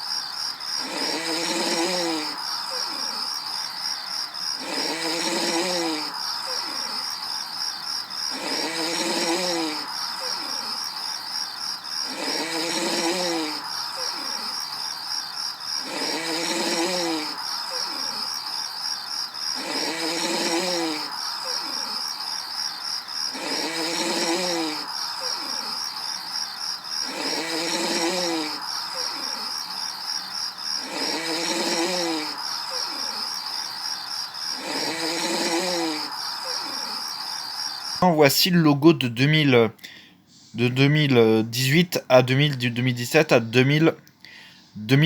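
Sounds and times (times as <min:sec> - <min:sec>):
crickets chirping: 0:00.0 - 0:45.0
cartoon snore: 0:00.7 - 0:03.4, 0:04.5 - 0:07.1, 0:08.2 - 0:10.9, 0:12.0 - 0:14.6, 0:15.8 - 0:18.4, 0:19.5 - 0:22.1, 0:23.2 - 0:26.2, 0:27.0 - 0:38.2.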